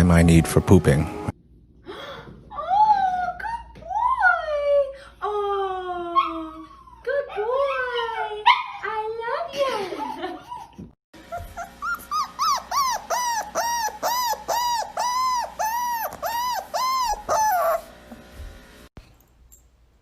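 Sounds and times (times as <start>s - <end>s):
dog whining: 10.5s - 18.0s.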